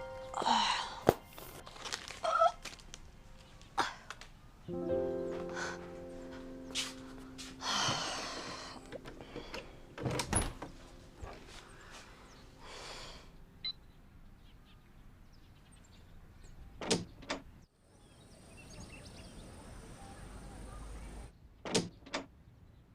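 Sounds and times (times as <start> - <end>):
sustained musical chord: 0.0 - 1.9, 4.6 - 13.6.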